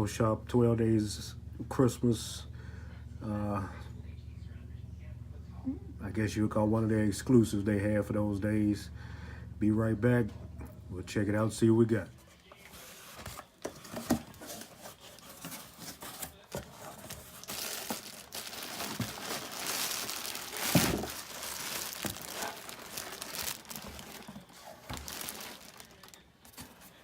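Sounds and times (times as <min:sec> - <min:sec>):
packaging crinkling and rustling: 0:13.0 - 0:27.0
packaging tearing: 0:14.4 - 0:26.6.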